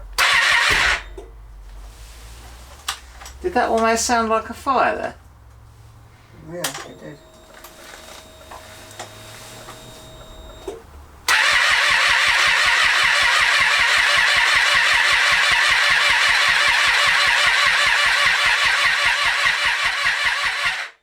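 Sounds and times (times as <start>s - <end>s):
engine cranking on starter motor: 0.0s - 1.4s, 9.0s - 21.0s.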